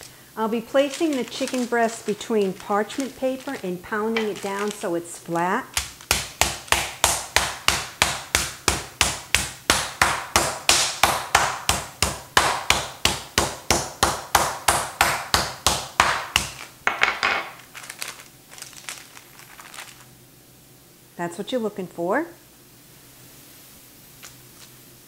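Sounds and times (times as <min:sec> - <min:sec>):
soft handling sounds: 0:00.0 - 0:05.0, 0:17.6 - 0:20.1
pounding chicken breast flat: 0:05.7 - 0:16.7.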